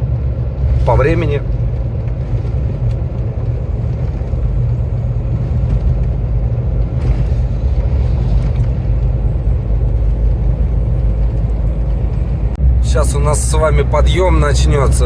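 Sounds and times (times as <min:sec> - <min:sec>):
truck engine and road rumble: 0:00.0 - 0:15.0.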